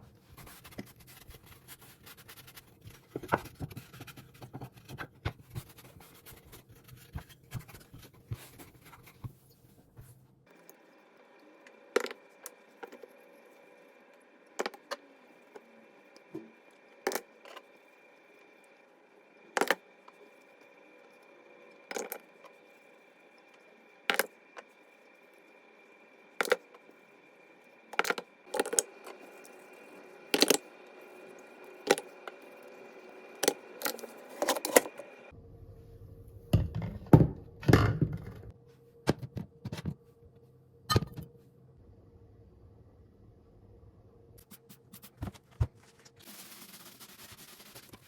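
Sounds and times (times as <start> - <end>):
kitchen items clinking and knocking: 36.6 - 38.5.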